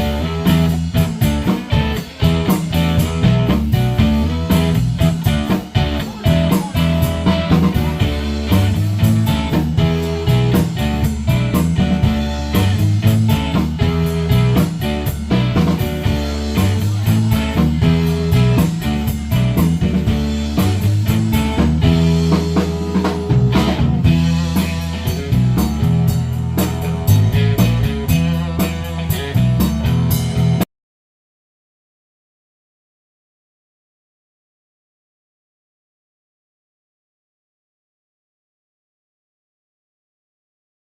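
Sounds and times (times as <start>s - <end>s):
blues-rock band playing: 0.0s - 30.6s.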